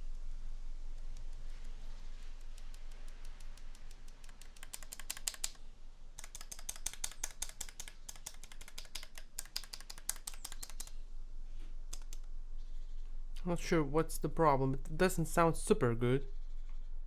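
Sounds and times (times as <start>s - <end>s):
mechanical keyboard keys clacking: 2.3s - 5.6s, 6.2s - 10.9s.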